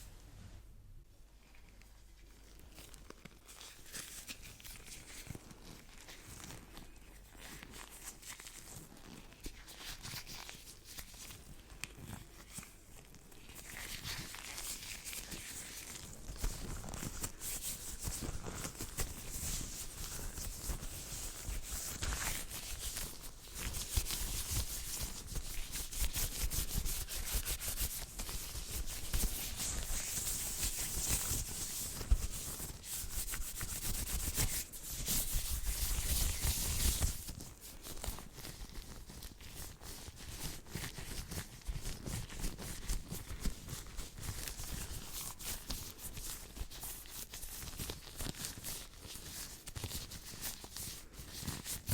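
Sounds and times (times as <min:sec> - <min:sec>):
hands rubbing together: 0:17.2 - 0:38.2.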